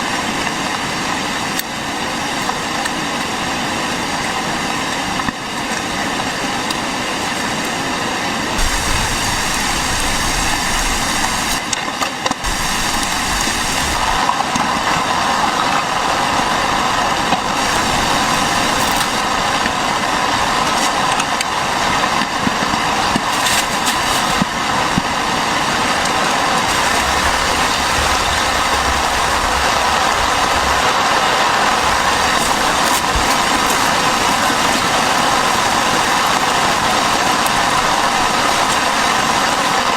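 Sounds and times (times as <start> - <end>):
heavy rain: 0.0 - 39.9
strong wind: 0.0 - 39.9
low rumbles: 24.3 - 36.3.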